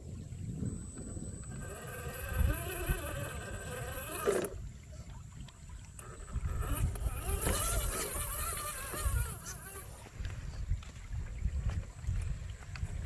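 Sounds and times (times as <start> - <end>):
toy car motor whining: 0.8 - 4.6, 6.0 - 10.0.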